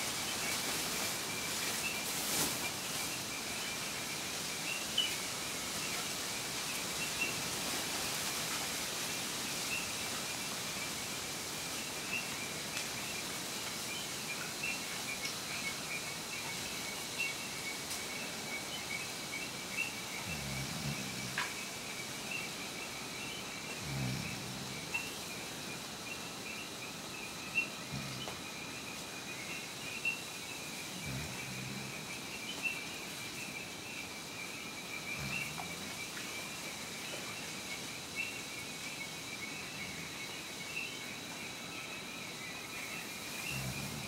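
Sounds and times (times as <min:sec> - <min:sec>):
wind hiss: 0:00.0 - 0:44.0
frogs calling: 0:09.5 - 0:44.0.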